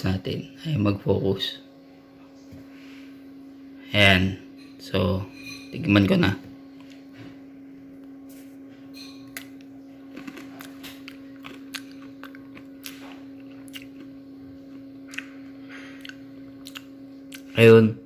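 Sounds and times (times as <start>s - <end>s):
steady low hum: 0.0s - 18.0s
person crunching cat treat: 10.1s - 14.1s.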